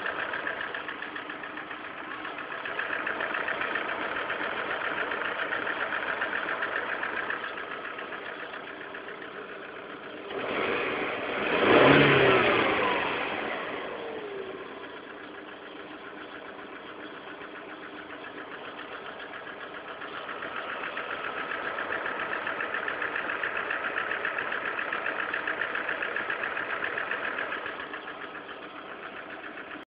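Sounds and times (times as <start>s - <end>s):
fast clicking rattle: 0.0s - 10.1s, 14.7s - 29.8s
car engine idling: 0.0s - 29.9s
engine revving: 10.0s - 15.1s, 18.6s - 29.7s.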